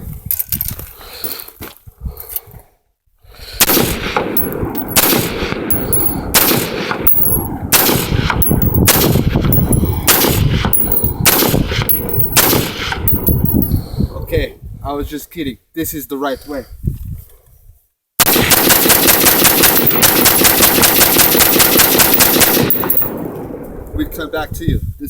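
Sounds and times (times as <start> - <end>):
rifle shots: 3.6 - 13.6, 18.2 - 23.8.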